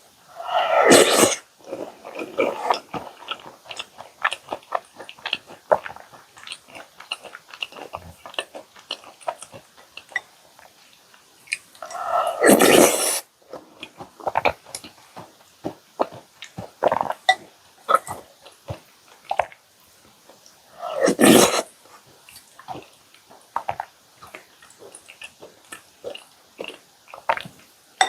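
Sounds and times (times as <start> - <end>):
chewing cookies: 0.3 - 28.0.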